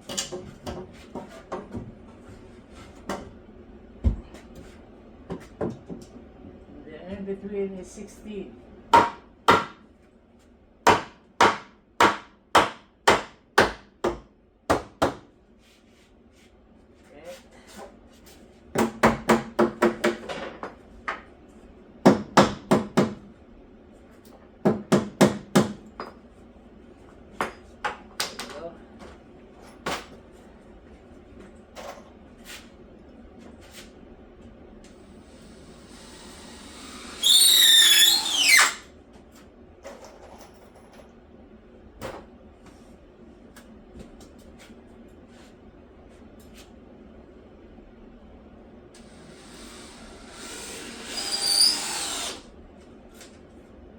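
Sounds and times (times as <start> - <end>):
hammer striking wooden stud: 9.0 - 9.8, 10.9 - 15.2.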